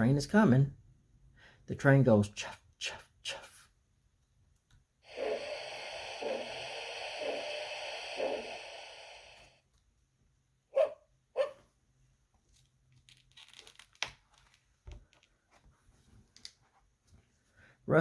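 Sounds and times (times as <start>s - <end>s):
electronic steam train chuffing: 5.1s - 9.6s.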